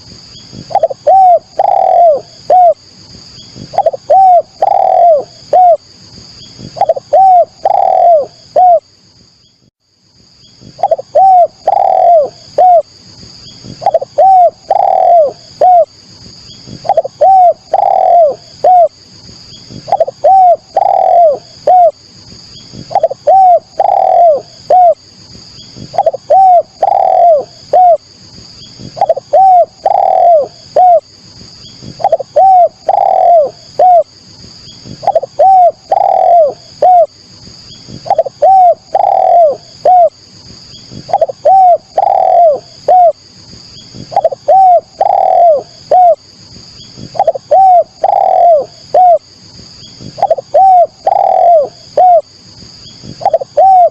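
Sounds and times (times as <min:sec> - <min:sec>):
dove cooing: 0:00.5 - 0:02.9, 0:03.5 - 0:05.8, 0:06.5 - 0:08.9, 0:10.6 - 0:13.0, 0:13.6 - 0:15.9, 0:16.7 - 0:19.0, 0:19.7 - 0:22.0, 0:22.7 - 0:25.0, 0:25.7 - 0:28.1, 0:28.8 - 0:31.1, 0:31.8 - 0:34.2, 0:34.8 - 0:37.2, 0:37.9 - 0:40.2, 0:40.9 - 0:43.2, 0:44.0 - 0:46.3, 0:47.0 - 0:49.3, 0:50.0 - 0:52.3, 0:53.0 - 0:53.9.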